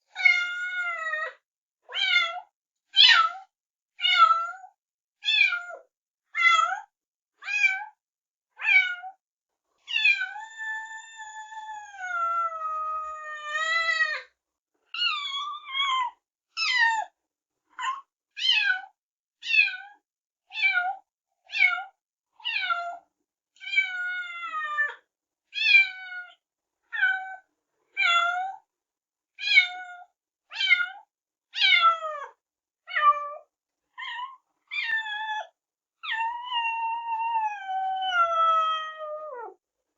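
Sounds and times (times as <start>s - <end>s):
kitten meowing: 9.9s - 14.1s, 31.6s - 32.0s.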